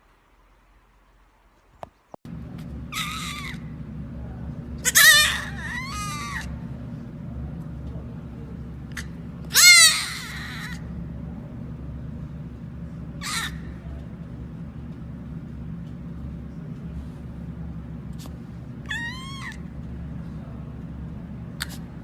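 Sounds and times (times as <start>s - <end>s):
steady low hum: 0.0s - 22.0s
animal calling: 2.9s - 3.8s, 4.8s - 6.7s, 8.9s - 11.0s, 13.1s - 14.0s, 18.8s - 19.8s.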